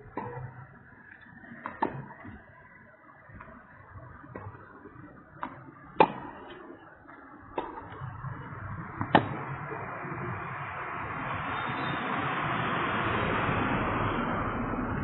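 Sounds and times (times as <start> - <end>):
tennis ball racket hits: 0.0 - 0.6, 1.6 - 2.4, 4.3 - 6.8, 7.5 - 8.1, 9.0 - 9.6
steady rushing noise: 0.0 - 15.0.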